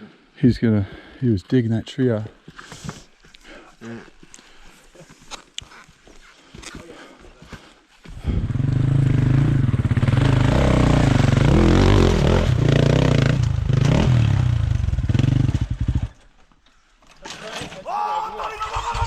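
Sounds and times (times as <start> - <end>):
dirt bike engine revving: 8.2 - 16.2.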